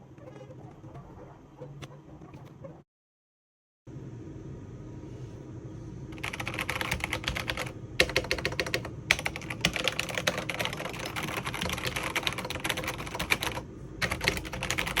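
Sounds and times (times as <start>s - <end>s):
mechanical keyboard typing: 6.2s - 15.0s.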